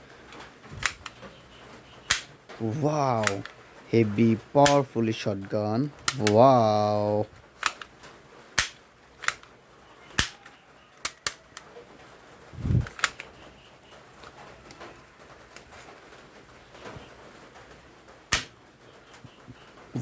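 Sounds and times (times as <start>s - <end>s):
toy shotgun plastic clicks: 0.8s - 1.2s, 2.0s - 2.4s, 3.1s - 3.6s, 4.6s - 4.9s, 6.0s - 6.8s, 7.5s - 7.9s, 8.6s - 9.5s, 10.1s - 11.7s, 12.8s - 13.3s, 18.3s - 18.5s.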